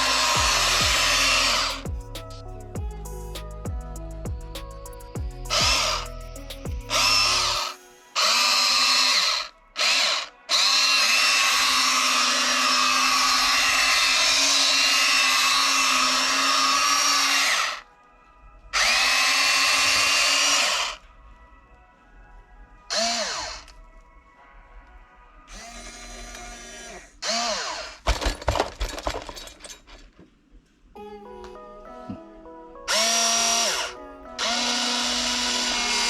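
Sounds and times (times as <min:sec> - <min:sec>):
electric gear motors whirring: 0:06.9 - 0:17.8.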